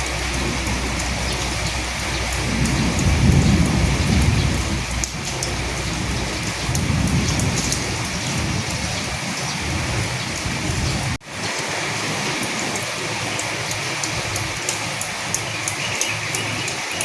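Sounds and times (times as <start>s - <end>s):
low rumble: 0.0s - 11.2s
rain pattering: 0.0s - 17.0s.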